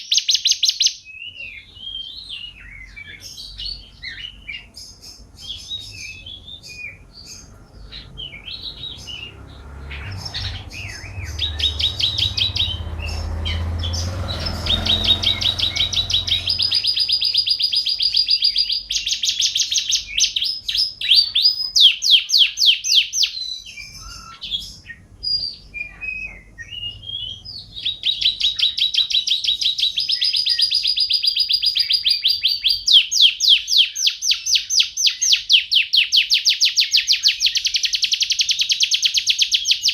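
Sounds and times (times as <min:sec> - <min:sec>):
canary singing trills: 0:00.0 - 0:39.9
low rumble: 0:07.6 - 0:17.4.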